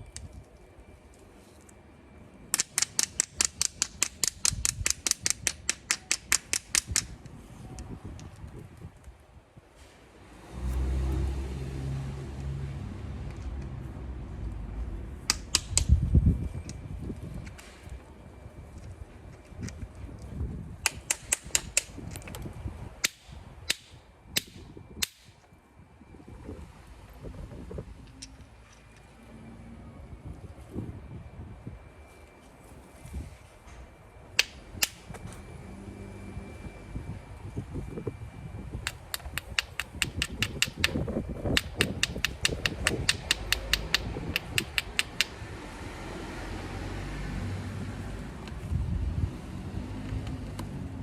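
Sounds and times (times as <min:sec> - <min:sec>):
stone knapping clicks: 0:02.5 - 0:07.1, 0:15.3 - 0:15.9, 0:20.8 - 0:22.2, 0:38.9 - 0:45.4.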